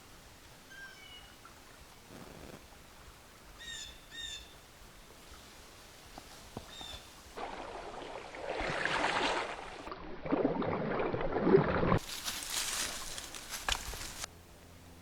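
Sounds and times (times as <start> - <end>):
dry leaves crunching underfoot: 12.0 - 14.3.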